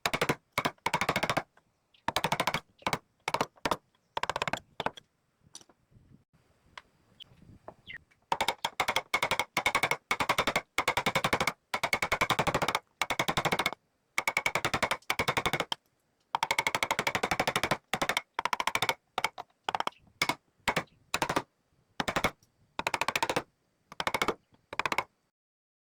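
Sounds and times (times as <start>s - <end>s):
power tool hammering rapidly: 0.0s - 1.5s, 2.1s - 5.0s, 8.3s - 15.8s, 16.4s - 21.4s, 22.0s - 25.1s.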